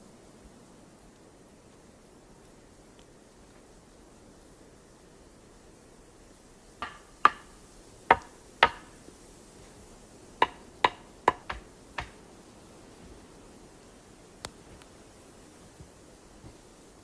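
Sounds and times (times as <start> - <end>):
sharp knocks: 6.8 - 7.5, 10.4 - 12.2.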